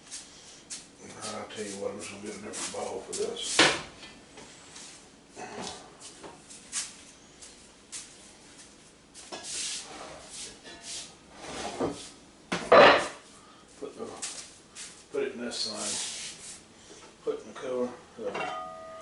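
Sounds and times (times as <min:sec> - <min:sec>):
dishware knocks and clinks: 0:12.6 - 0:13.2, 0:18.3 - 0:19.0.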